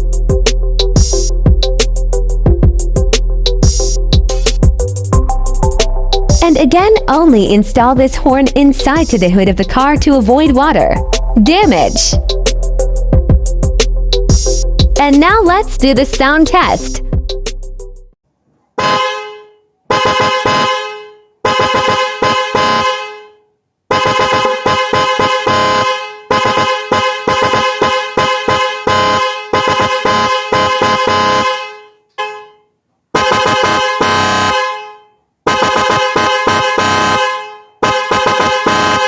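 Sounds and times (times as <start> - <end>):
twin-tone car horn blasts: 18.8 - 39.0.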